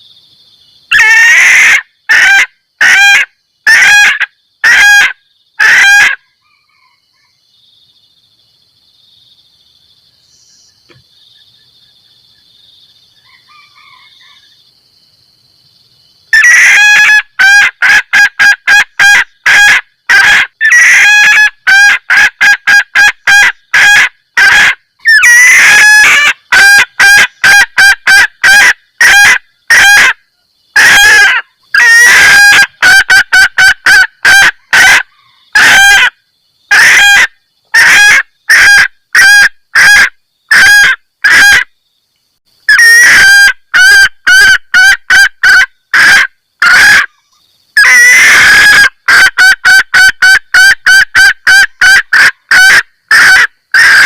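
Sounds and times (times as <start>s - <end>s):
hen clucking call: 0.9s - 6.9s, 16.3s - 30.2s, 30.8s - 41.7s, 42.7s - 47.1s, 47.8s - 54.0s.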